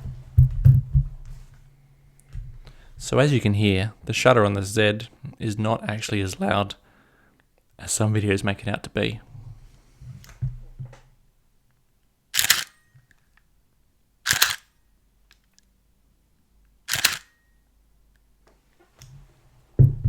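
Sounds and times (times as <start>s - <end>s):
camera shutter clacking: 12.4s - 13.0s, 14.3s - 14.8s, 16.9s - 17.5s.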